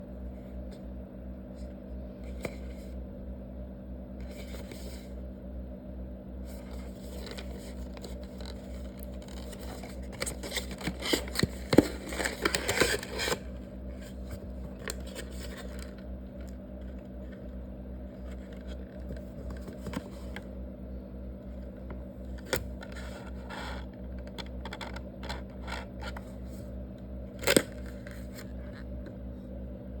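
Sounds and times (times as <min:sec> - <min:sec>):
steady electrical hum: 0:00.0 - 0:30.0
small objects scraping and rustling: 0:06.5 - 0:17.5.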